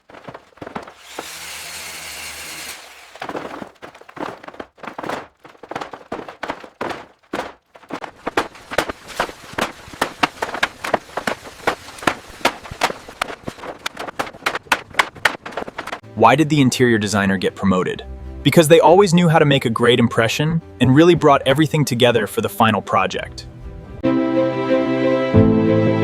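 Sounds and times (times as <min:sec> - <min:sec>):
power tool running: 0:00.6 - 0:03.6.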